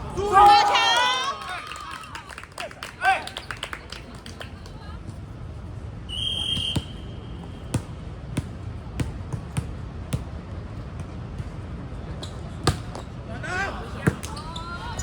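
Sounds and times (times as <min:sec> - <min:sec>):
referee's whistle: 0:06.1 - 0:07.4.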